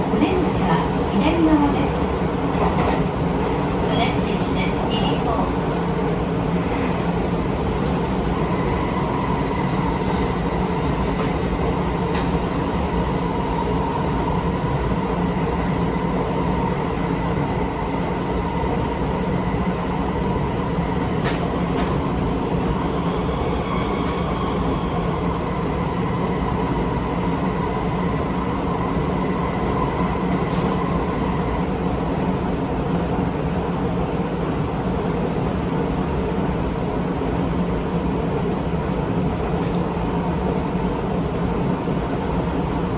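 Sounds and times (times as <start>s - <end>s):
train wheels rumbling on rail: 0.0s - 42.9s.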